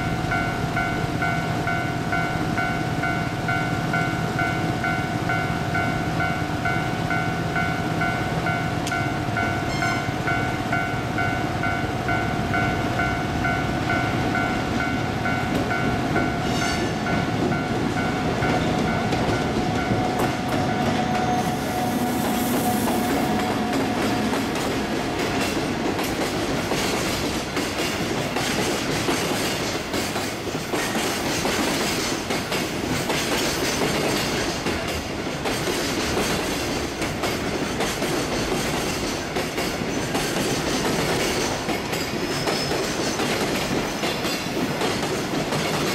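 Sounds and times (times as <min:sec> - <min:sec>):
steady tone: 0:00.0 - 0:27.1
train wheels clacking over rail joints: 0:22.2 - 0:45.9.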